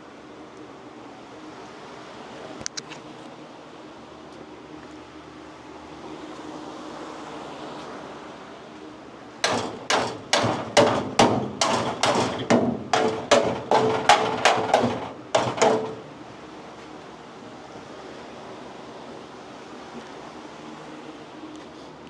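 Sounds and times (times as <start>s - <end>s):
hammer striking sheet metal: 9.4s - 16.1s.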